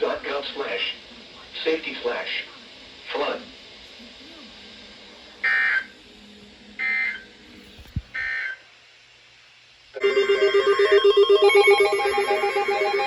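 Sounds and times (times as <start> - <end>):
alert data bursts: 5.4 - 6.0, 10.0 - 13.0
electronic ringtone melody: 10.0 - 13.0.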